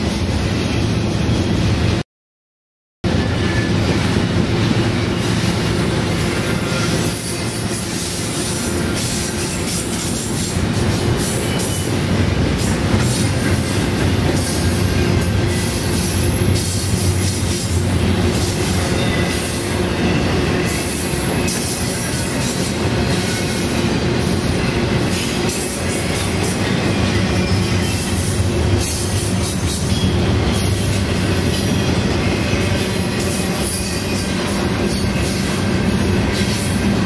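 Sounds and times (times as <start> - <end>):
freight train wheels rumbling: 0.0 - 2.0, 3.0 - 37.0
train clatter: 3.1 - 37.0
wheel squeal: 6.1 - 10.2, 26.6 - 36.9.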